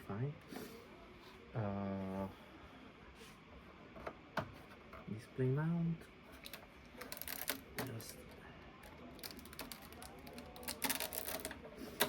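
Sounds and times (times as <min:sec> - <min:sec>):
packaging rustling and clicking: 0:06.4 - 0:08.2, 0:09.2 - 0:12.0.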